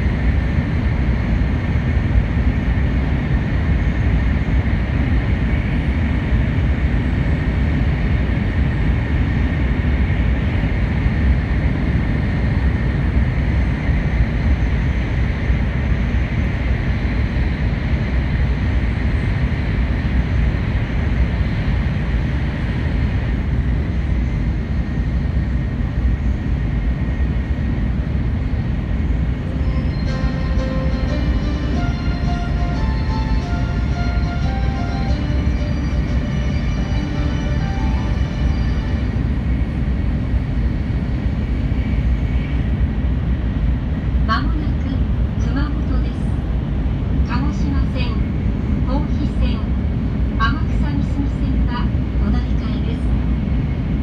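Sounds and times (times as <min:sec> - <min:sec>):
train wheel rumble and air noise: 0:00.0 - 0:54.0
thin high steady tone: 0:29.5 - 0:39.6.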